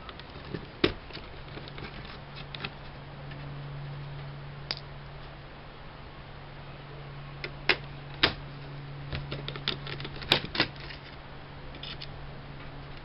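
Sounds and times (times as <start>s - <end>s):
steady low hum: 0.0s - 13.0s
clicks of laptop parts and tool: 9.1s - 11.2s, 11.8s - 12.1s.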